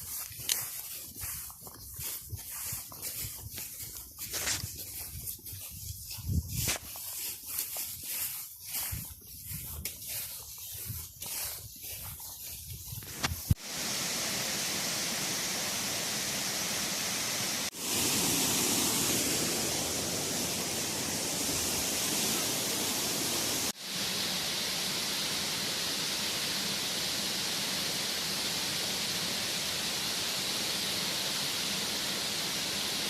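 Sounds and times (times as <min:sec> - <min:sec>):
waterfall roaring: 0:13.6 - 0:33.0.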